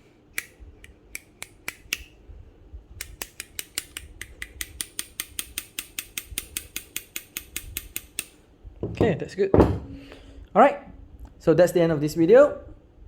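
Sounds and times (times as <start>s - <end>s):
pliers clicking open and shut: 0.4s - 2.1s, 3.0s - 8.4s.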